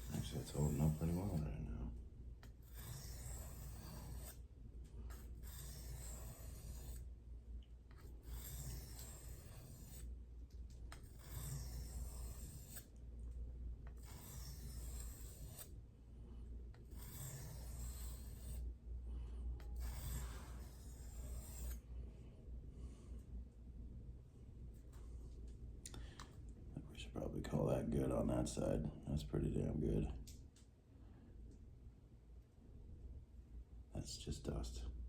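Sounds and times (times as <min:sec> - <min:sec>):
knife scraping on sharpening stone: 0:00.0 - 0:01.4, 0:02.4 - 0:04.4, 0:05.1 - 0:07.0, 0:07.9 - 0:10.0, 0:10.9 - 0:12.9, 0:13.9 - 0:15.7, 0:16.9 - 0:18.6, 0:19.6 - 0:21.8.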